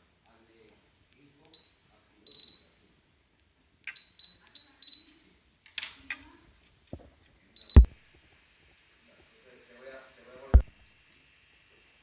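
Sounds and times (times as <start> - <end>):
short high beeps: 2.3 - 2.7.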